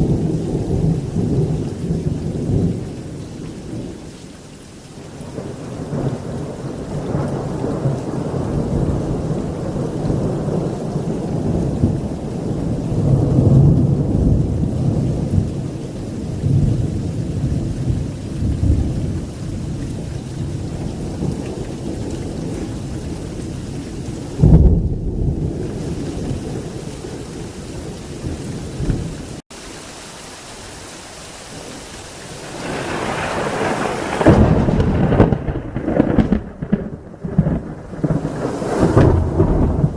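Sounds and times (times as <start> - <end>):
heavy rain: 0.0 - 39.9
rolling thunder: 5.2 - 29.4, 32.4 - 39.9
loud thunderclap: 24.3 - 27.1, 32.5 - 39.9.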